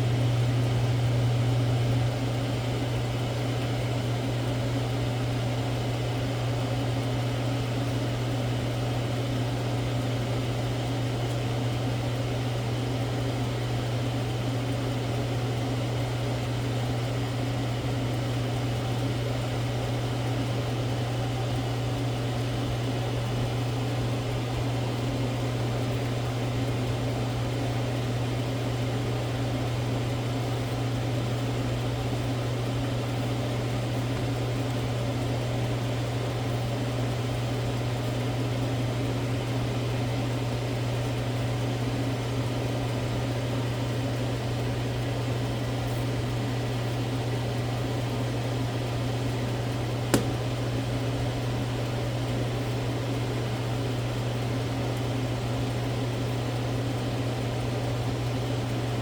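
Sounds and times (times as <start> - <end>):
kitchen appliance humming: 0.0 - 59.0
sharp click: 50.1 - 50.5.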